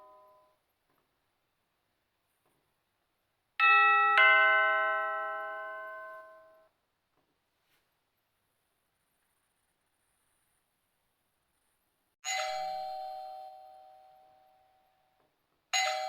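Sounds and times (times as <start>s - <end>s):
two-note doorbell chime: 0.0s - 0.6s, 3.6s - 6.7s, 12.2s - 15.0s, 15.8s - 16.0s.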